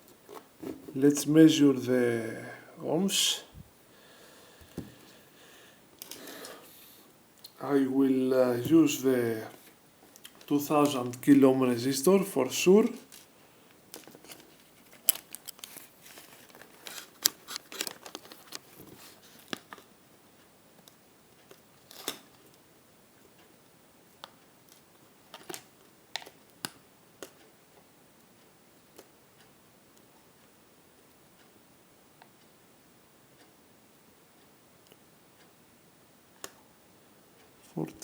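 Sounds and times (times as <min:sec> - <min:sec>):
light crinkling: 0:08.5 - 0:19.9.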